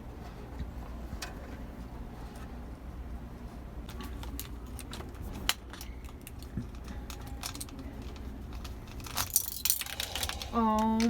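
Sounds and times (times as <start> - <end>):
small metal parts clicking: 4.2 - 11.0.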